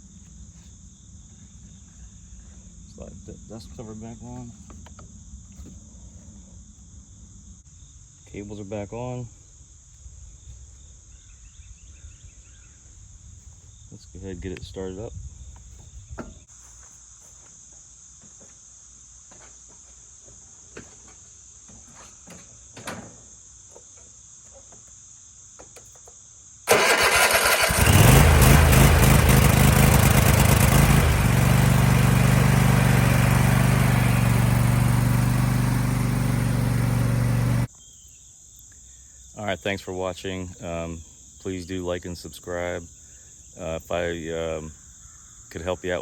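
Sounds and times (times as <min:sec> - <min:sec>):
crickets chirping: 0:00.0 - 0:27.9, 0:37.7 - 0:46.0
mower engine cranking and running: 0:26.7 - 0:37.7.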